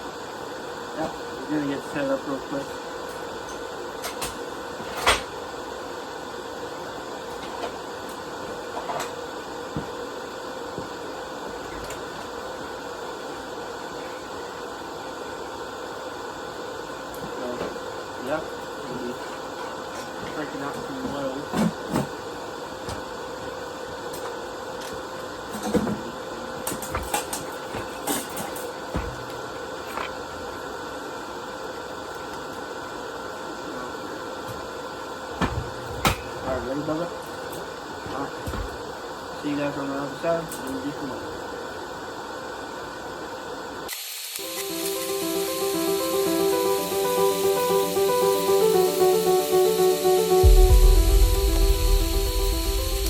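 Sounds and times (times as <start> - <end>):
steady fan-like hum: 0.0 - 43.9
machine hum with thin tone: 44.4 - 53.0.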